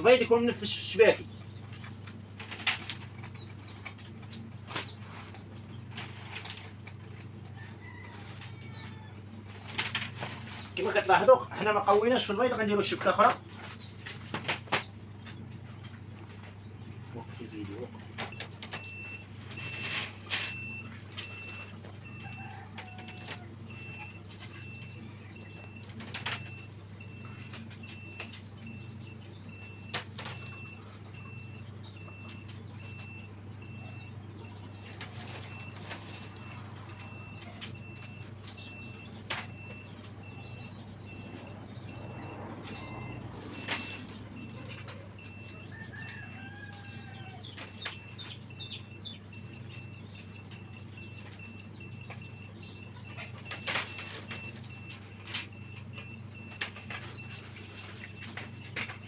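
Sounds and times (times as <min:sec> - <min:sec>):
chickens calling: 0:00.0 - 0:59.0
incubator fan hum: 0:00.0 - 0:59.0
high electronic beep: 0:27.1 - 0:46.1.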